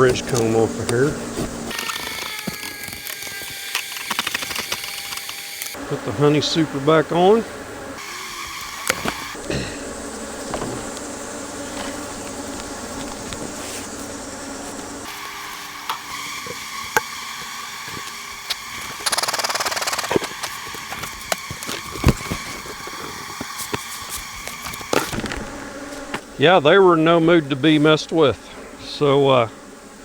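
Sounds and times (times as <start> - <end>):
bees buzzing: 0.0 - 30.0.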